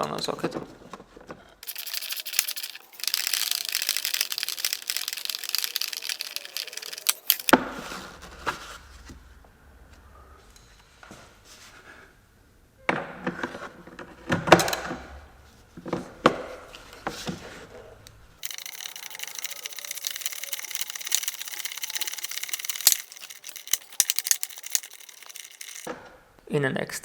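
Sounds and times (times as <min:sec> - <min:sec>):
metal tools clattering: 0:01.6 - 0:07.5, 0:18.4 - 0:25.9
socket ratchet clicking: 0:01.6 - 0:07.5, 0:18.4 - 0:25.9.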